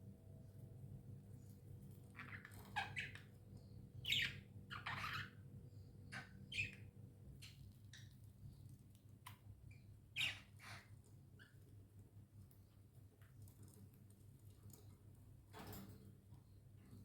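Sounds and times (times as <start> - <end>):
budgerigars squawking and chirping: 4.0 - 5.4, 10.2 - 10.9.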